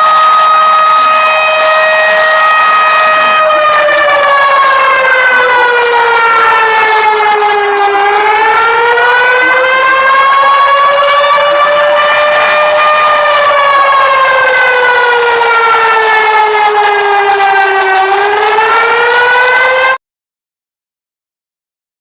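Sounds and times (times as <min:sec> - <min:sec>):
warning siren: 0:00.0 - 0:20.0.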